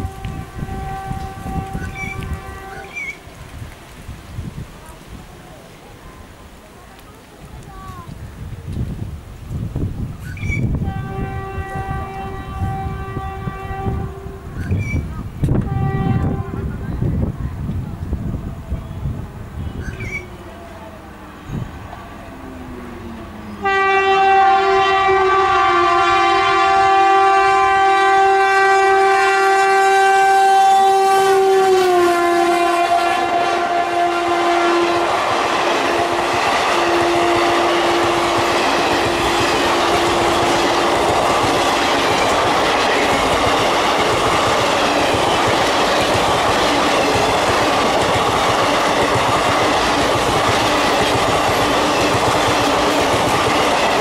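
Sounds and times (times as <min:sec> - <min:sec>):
locomotive horn blast: 0:00.0 - 0:03.2, 0:10.7 - 0:14.6, 0:15.6 - 0:16.8, 0:21.3 - 0:45.8
train wheels clattering on rails: 0:35.0 - 0:54.0.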